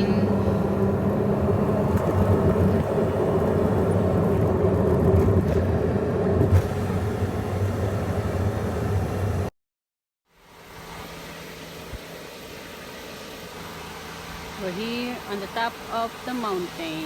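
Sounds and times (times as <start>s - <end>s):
vehicle engine running: 0.0s - 9.5s.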